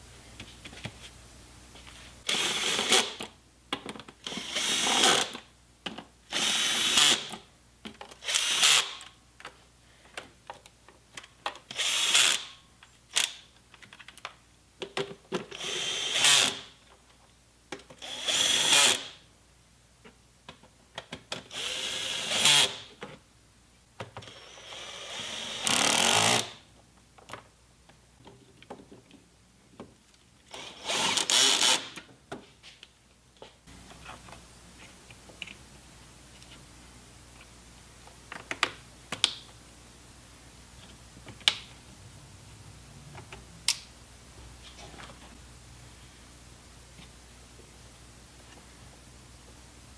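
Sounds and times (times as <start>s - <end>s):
cordless drill driving fasteners: 2.2s - 3.3s, 4.2s - 5.4s, 6.3s - 7.4s, 8.2s - 9.1s, 11.7s - 13.4s, 15.5s - 16.7s, 21.5s - 22.8s, 24.2s - 26.6s, 30.5s - 32.0s.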